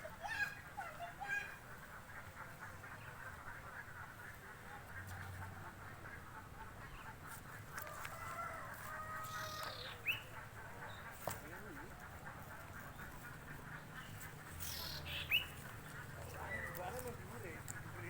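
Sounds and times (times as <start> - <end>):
faint background chatter: 0.0 - 18.0
bird chirps: 14.6 - 15.6.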